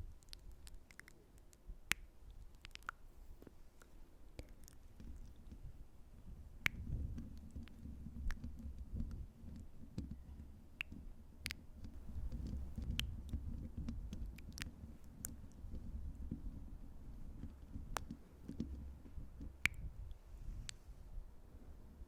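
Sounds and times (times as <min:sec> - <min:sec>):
sharp sticky clicks: 0:00.2 - 0:03.0, 0:17.4 - 0:19.9
rubbing against microphone: 0:04.5 - 0:21.0.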